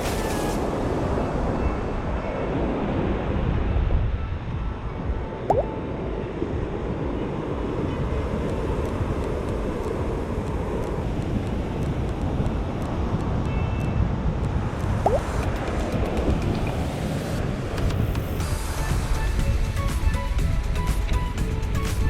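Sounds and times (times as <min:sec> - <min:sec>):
wind blowing across microphone: 0:00.0 - 0:22.0.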